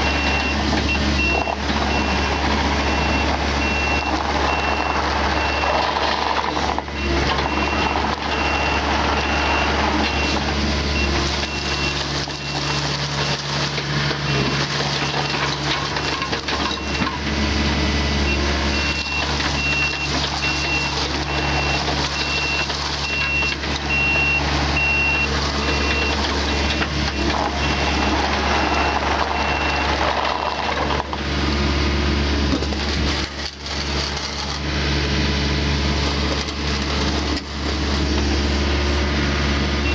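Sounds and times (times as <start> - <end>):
diesel engine running: 0.0 - 39.9
motion alarm beeping: 18.3 - 29.9.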